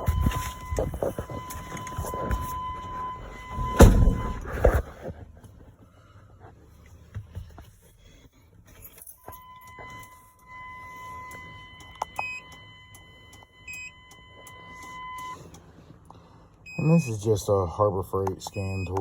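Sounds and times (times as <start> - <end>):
keys jangling: 8.7 - 9.5.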